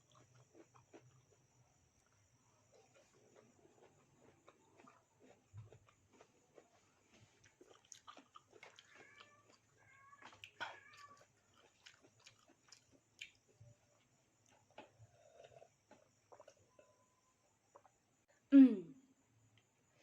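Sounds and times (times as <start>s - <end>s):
chewing and crunching food: 0.0s - 18.2s.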